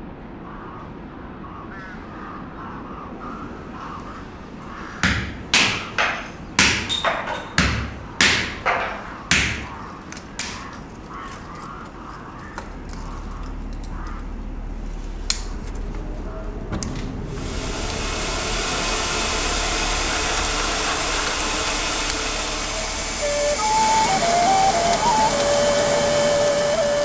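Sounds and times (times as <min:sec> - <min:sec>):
hammer striking steel anvil: 0:03.5 - 0:13.8.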